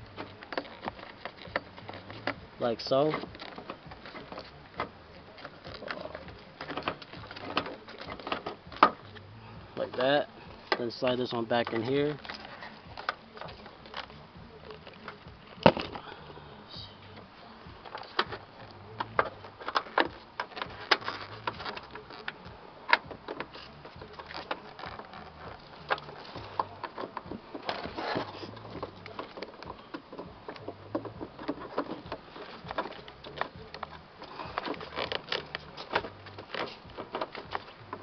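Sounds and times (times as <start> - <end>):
plastic parts clicking and tapping: 0.1 - 9.2, 17.8 - 38.0.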